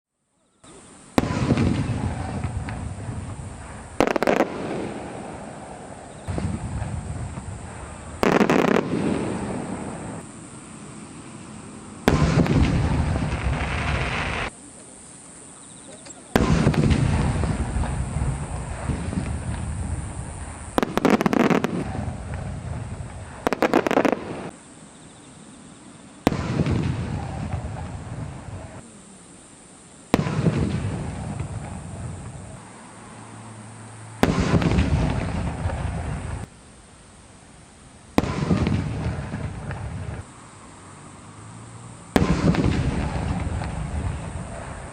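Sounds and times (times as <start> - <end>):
firework sharp cracks: 0.8 - 14.6, 16.2 - 24.6, 26.2 - 28.8, 30.1 - 32.6, 34.2 - 36.5, 38.1 - 40.3, 42.1 - 44.9
firework booms: 1.1 - 14.5, 16.3 - 24.6, 26.2 - 28.8, 30.1 - 32.6, 34.2 - 36.5, 38.1 - 40.3, 42.1 - 44.9
sharp boom with echo: 42.2 - 44.6.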